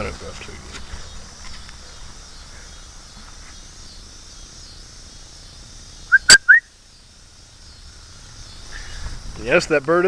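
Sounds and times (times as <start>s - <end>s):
insects chirring: 0.0s - 10.0s
loud short rising chirps: 6.1s - 6.7s.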